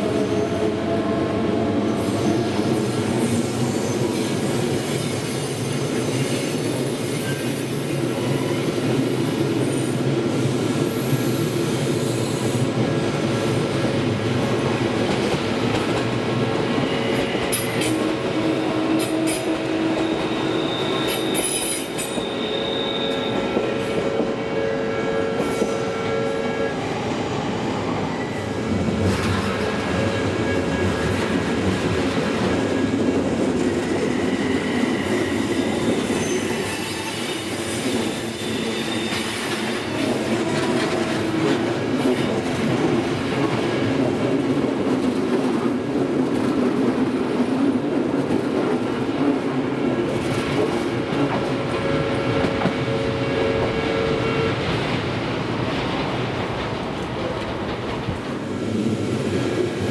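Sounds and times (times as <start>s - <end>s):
wheels squealing: 19.2s - 24.0s
train wheels clattering over joints: 50.1s - 58.6s.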